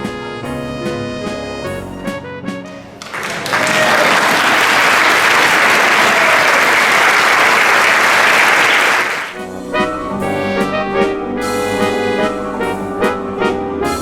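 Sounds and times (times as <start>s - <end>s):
band music with brass: 0.0s - 5.1s, 6.2s - 14.0s
audience clapping: 3.0s - 9.4s.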